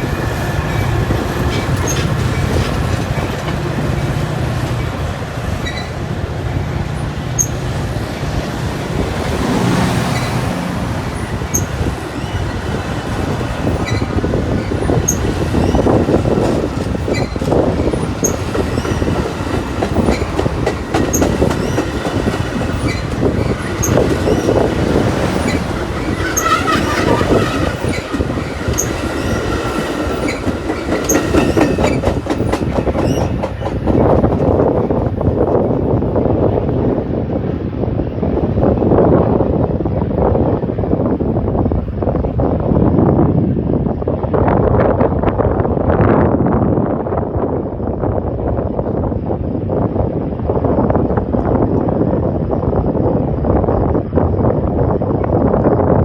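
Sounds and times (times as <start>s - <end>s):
train wheels clacking on rails: 0.0s - 37.0s
high wheel squeal: 0.6s - 6.2s, 6.9s - 34.1s.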